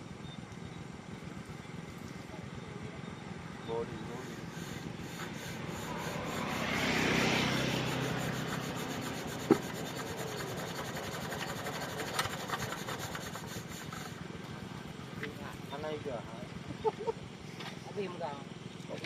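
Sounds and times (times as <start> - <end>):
diesel pump engine running: 0.0 - 19.0
rasping noise: 4.1 - 14.2.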